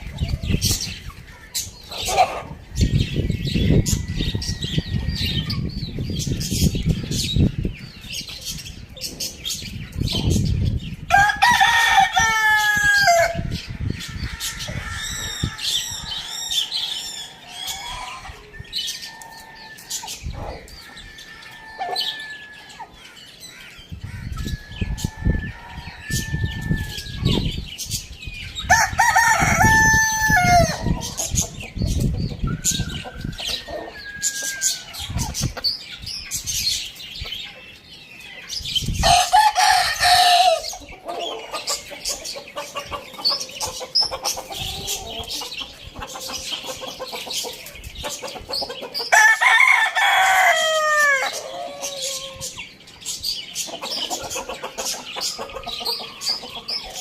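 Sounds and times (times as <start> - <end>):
chicken calls: 0.0 - 57.0
high patterned bird call: 0.0 - 57.0
rooster crowing: 11.1 - 13.5, 28.7 - 30.9, 39.0 - 40.7, 49.1 - 52.4.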